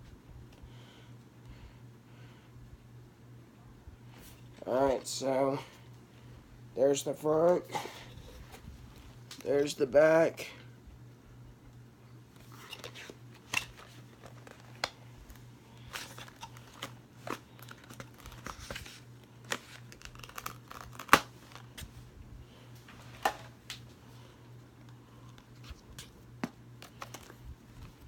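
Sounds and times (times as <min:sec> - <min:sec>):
plastic shrink-wrap tearing and crinkling: 0:15.8 - 0:21.8.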